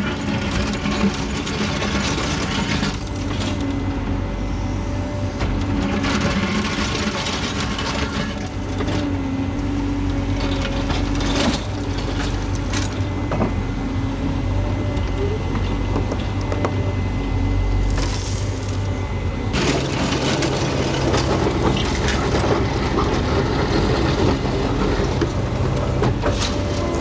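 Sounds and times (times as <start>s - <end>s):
construction machine engine running: 0.1s - 27.0s
clanks and scrapes: 19.5s - 27.0s.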